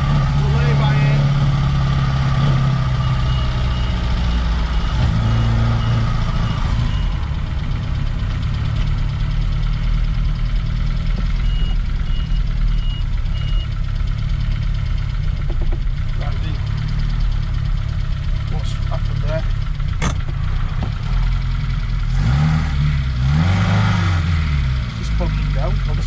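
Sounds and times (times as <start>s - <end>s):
car engine running: 0.0s - 26.0s.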